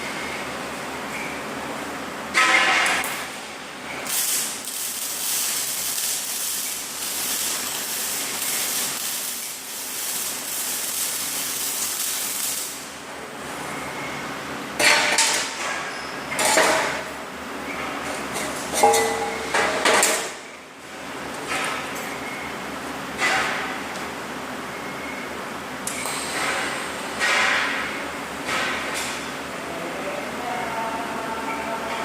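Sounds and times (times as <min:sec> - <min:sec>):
welding arc hissing: 0:04.0 - 0:13.1.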